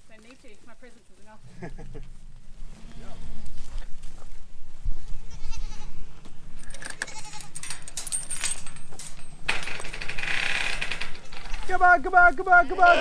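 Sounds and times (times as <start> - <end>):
goats bleating: 5.2 - 6.0, 11.4 - 13.0
clicks and rattles: 6.6 - 12.0.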